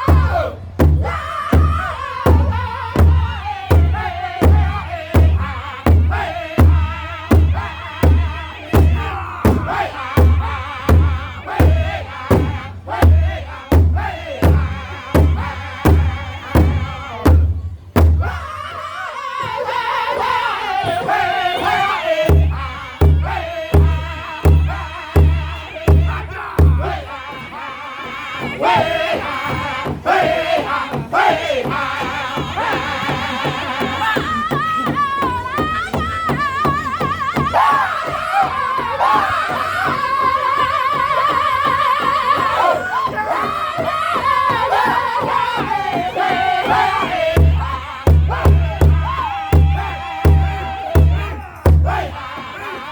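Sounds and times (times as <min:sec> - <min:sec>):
big drum beating: 0:00.0 - 0:18.4, 0:22.2 - 0:27.1, 0:43.5 - 0:52.5
men singing high wavering: 0:00.0 - 0:52.9.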